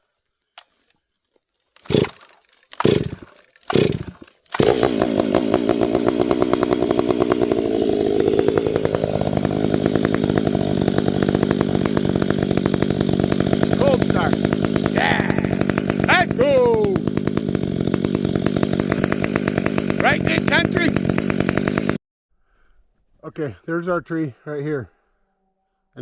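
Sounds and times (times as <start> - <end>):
chainsaw engine starting and running: 1.7 - 22.0
chainsaw engine bursts: 1.8 - 22.0.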